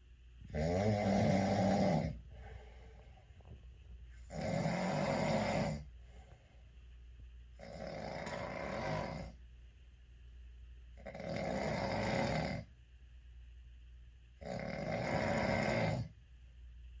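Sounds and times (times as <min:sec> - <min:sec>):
quiet breathing: 0:00.0 - 0:09.4
loud snoring: 0:00.5 - 0:02.2, 0:04.3 - 0:05.9, 0:07.6 - 0:09.4, 0:11.0 - 0:12.7, 0:14.4 - 0:16.1.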